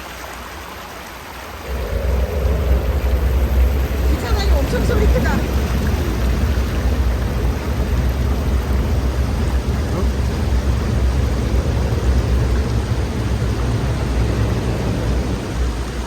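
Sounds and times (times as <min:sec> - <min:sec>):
river water rushing: 0:00.0 - 0:16.0.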